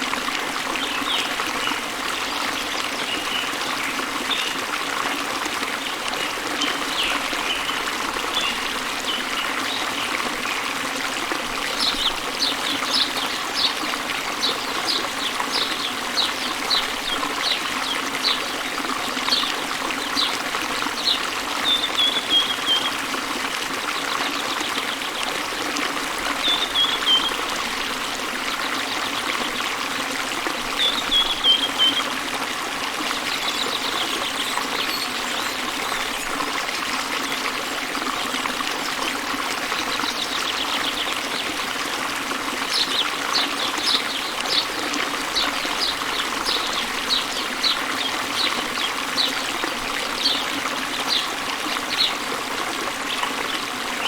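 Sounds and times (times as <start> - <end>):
waterfall rushing water: 0.0 - 54.0
birds singing: 11.6 - 23.1, 26.3 - 27.5, 30.6 - 32.2, 33.1 - 36.4, 39.7 - 41.8, 42.6 - 52.3.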